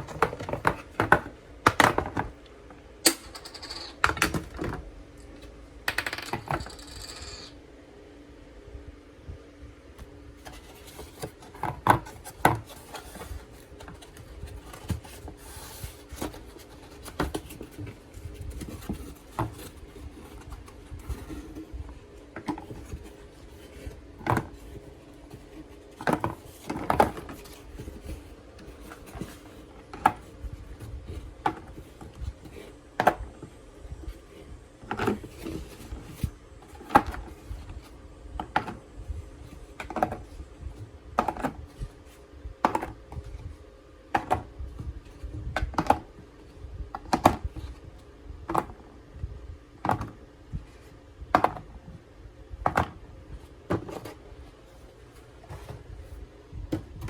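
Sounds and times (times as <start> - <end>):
steady low hum: 0.0 - 57.0
plastic rubbing and scraping: 10.4 - 33.3.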